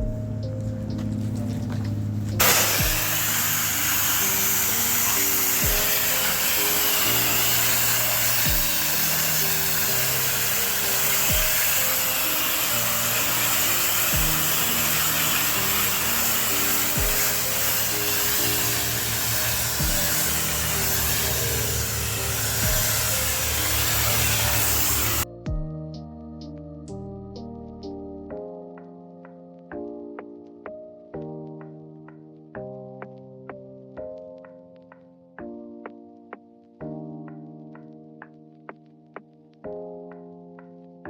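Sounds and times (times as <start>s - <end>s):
background music with slow beat: 0.0s - 41.0s
pressure washer spraying water: 0.1s - 25.3s.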